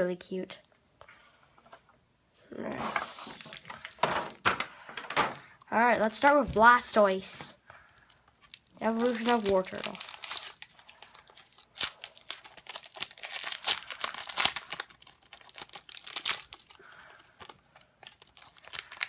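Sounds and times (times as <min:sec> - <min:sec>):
foil wrapper tearing and crinkling: 0:08.0 - 0:19.0.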